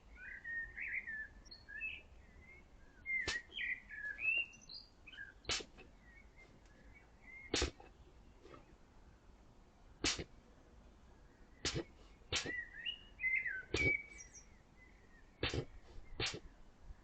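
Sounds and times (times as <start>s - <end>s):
wild boar sneezing: 5.5s - 5.8s, 7.5s - 8.7s, 10.0s - 10.4s, 11.6s - 12.7s, 13.7s - 14.1s, 15.4s - 16.5s.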